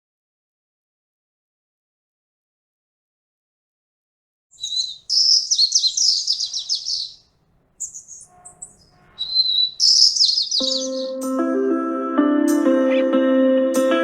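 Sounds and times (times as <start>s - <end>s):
songbird trilling: 4.6s - 11.3s
plucked guitar music: 10.6s - 14.0s.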